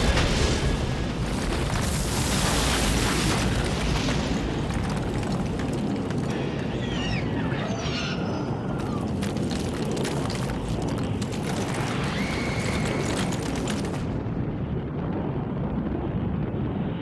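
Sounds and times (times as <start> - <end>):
rocket launch roar: 0.0 - 10.0.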